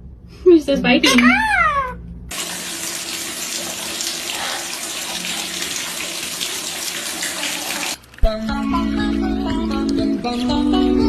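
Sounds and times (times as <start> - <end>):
water running from a tap: 2.3 - 8.1.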